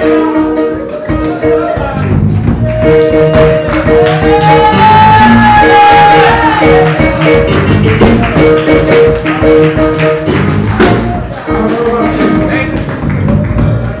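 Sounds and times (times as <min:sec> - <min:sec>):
tambourine shaking: 0:00.0 - 0:03.0, 0:06.2 - 0:09.4
drums: 0:00.0 - 0:14.0
repeated keyboard chords: 0:00.0 - 0:14.0.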